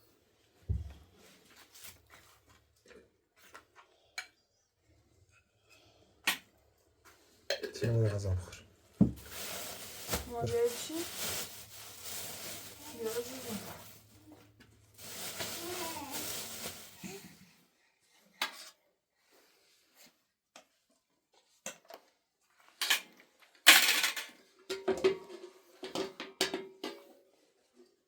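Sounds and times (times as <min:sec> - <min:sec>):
person speaking: 0:10.1 - 0:11.2, 0:12.8 - 0:13.9, 0:15.4 - 0:16.3.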